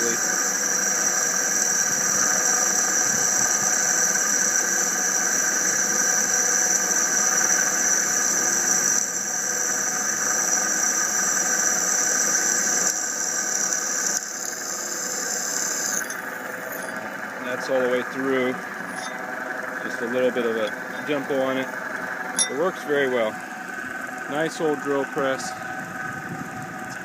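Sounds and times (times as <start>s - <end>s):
drill press whining: 0.0s - 27.0s.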